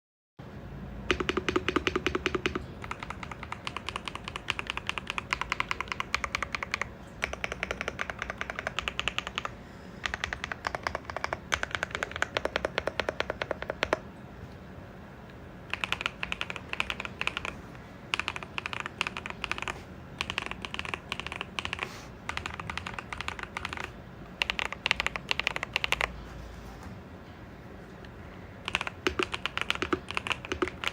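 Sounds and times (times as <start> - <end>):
mechanical keyboard typing: 1.1 - 14.0, 15.7 - 26.2, 28.6 - 30.9.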